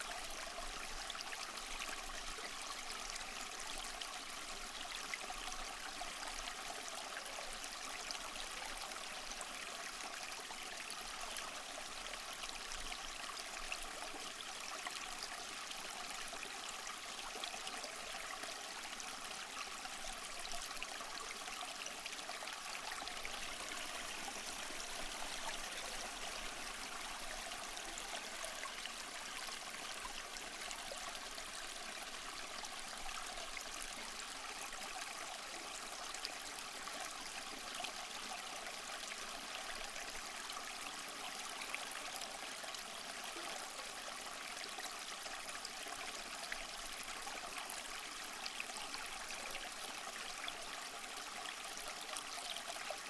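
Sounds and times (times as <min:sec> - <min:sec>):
small waterfall splashing: 0:14.1 - 0:53.0.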